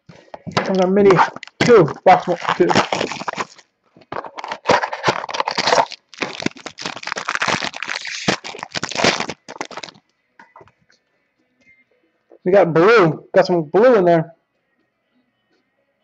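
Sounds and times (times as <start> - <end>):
packaging crinkling and tearing: 0.2 - 10.0.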